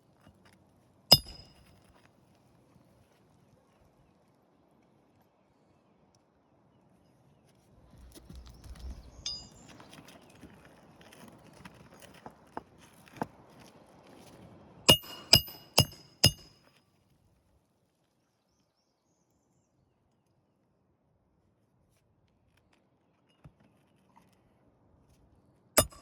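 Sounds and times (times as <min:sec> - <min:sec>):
hammer striking nail: 0:01.1 - 0:01.7, 0:14.9 - 0:16.6, 0:25.8 - 0:26.0
faint scraping and taps: 0:07.5 - 0:14.4.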